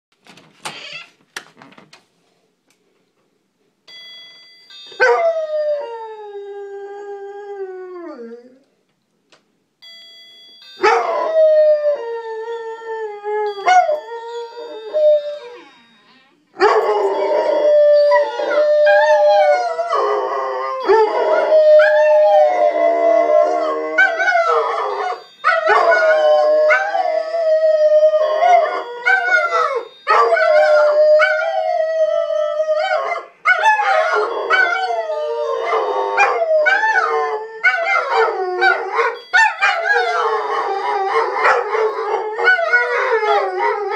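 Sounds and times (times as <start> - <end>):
dogs howling: 16.6 - 43.9.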